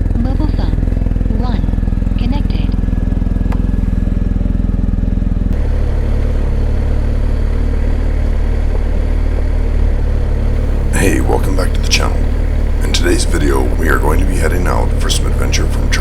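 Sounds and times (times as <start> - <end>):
motorcycle engine running: 0.0 - 8.0, 10.6 - 16.0.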